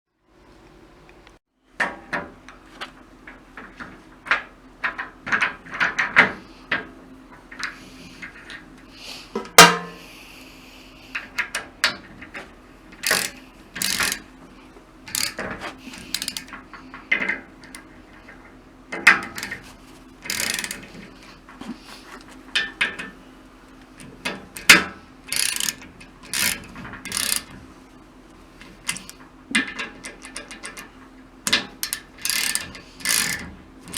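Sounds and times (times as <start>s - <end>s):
hand tools clicking on metal: 12.9s - 14.3s, 15.1s - 16.6s, 19.0s - 21.1s, 23.8s - 27.6s, 28.6s - 30.9s, 31.5s - 33.9s.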